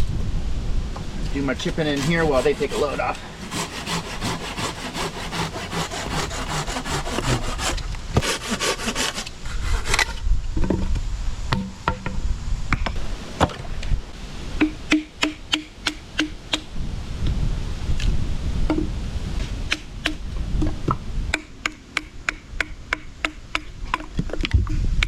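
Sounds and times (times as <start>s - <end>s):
hand saw cutting wood: 1.5s - 10.2s
sharp wooden knocks: 19.7s - 24.8s.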